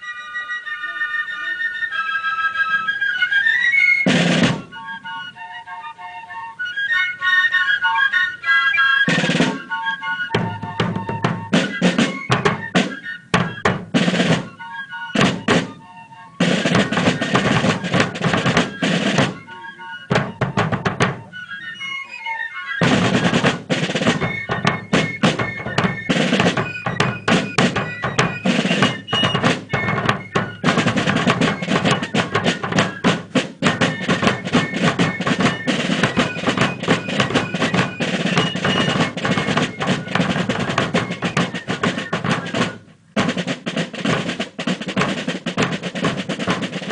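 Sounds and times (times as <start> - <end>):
snare drum rolls: 4.0 - 4.9, 9.0 - 21.4, 22.8 - 46.9
fifes playing a melody: 16.4 - 46.9.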